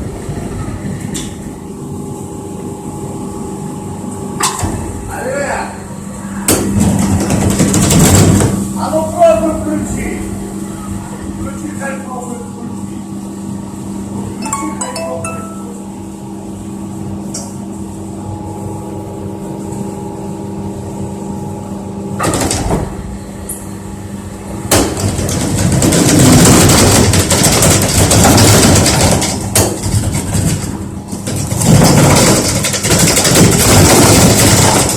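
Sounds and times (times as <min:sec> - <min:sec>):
dryer machinery droning and rumbling: 0:00.0 - 0:14.5, 0:15.7 - 0:34.9.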